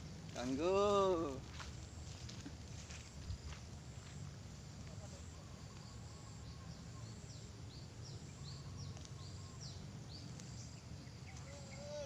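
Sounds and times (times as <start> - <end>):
bird chirping: 5.4 - 12.0.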